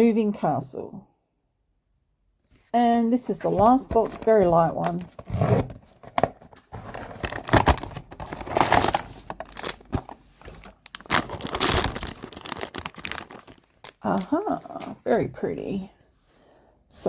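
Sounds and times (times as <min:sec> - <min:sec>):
cardboard tearing: 0:05.1 - 0:14.0
plastic wrapping crinkling: 0:06.5 - 0:15.0.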